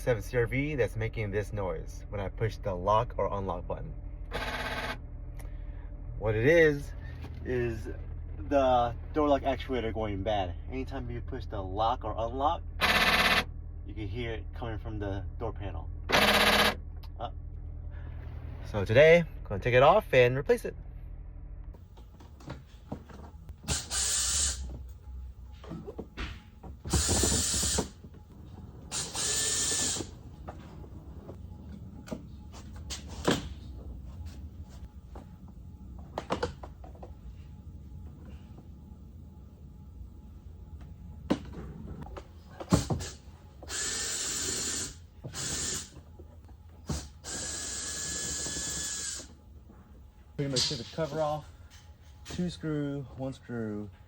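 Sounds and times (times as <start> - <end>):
cordless drill spinning: 26.9 - 27.9, 28.9 - 30.1, 43.6 - 45.9, 47.2 - 49.3.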